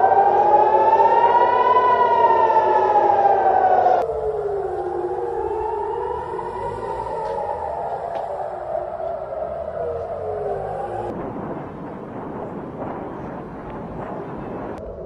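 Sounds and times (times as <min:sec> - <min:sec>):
siren wailing: 0:00.0 - 0:11.2.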